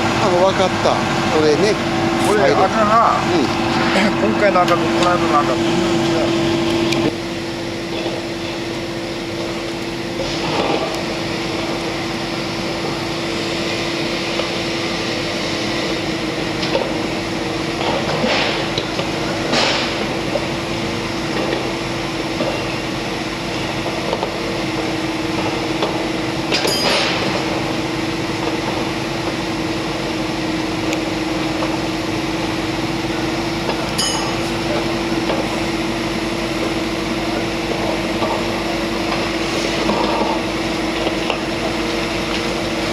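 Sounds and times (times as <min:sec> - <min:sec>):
diesel engine running: 0:00.0 - 0:42.9.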